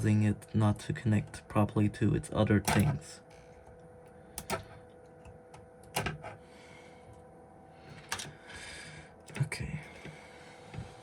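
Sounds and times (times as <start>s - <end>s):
small clicks and taps on workbench: 4.4s - 6.4s.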